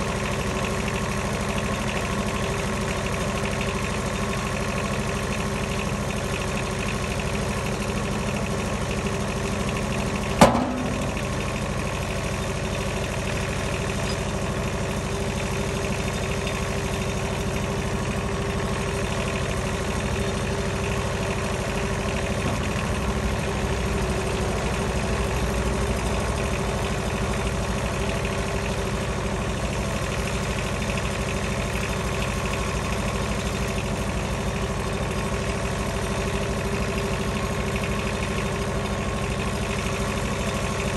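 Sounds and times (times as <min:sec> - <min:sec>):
sawmill running: 0:00.0 - 0:40.9.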